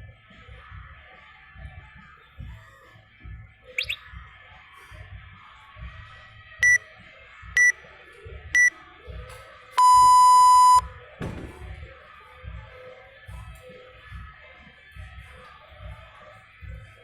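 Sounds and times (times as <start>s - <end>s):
background music with steady beat: 6.2s - 6.9s, 7.6s - 7.9s
long lower timer beep: 9.8s - 10.8s
short high timer beeps: 9.8s - 10.8s.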